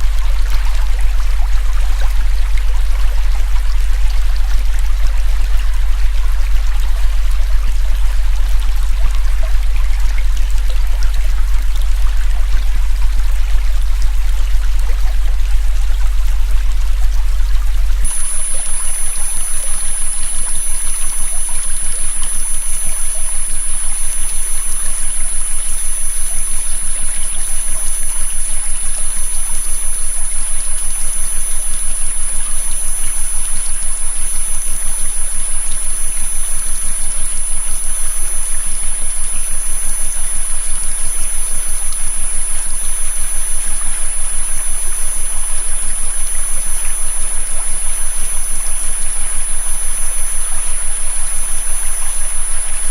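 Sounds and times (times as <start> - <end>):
low hum: 0.0 - 52.9
high-pitched synthetic tones: 18.0 - 52.9.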